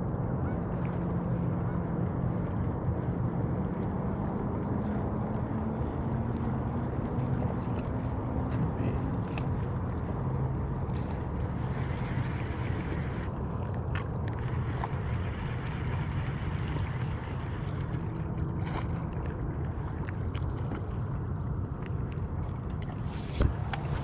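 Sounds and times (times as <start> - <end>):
boat motor running: 0.0 - 24.0
water noise: 0.0 - 24.0
wind: 0.0 - 24.0.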